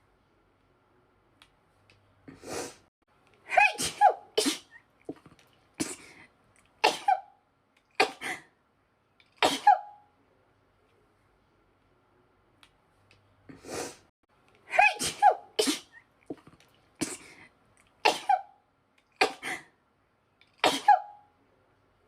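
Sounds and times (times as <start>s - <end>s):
woman sneezing: 3.5s - 4.8s, 6.8s - 7.3s, 9.4s - 9.9s, 14.7s - 16.0s, 18.0s - 18.5s, 20.6s - 21.2s.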